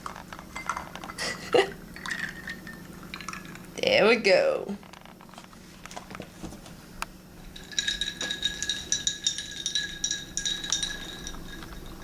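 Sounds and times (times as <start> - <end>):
spoon clinking in a glass: 0.6 - 1.2, 2.0 - 3.7, 7.5 - 12.0.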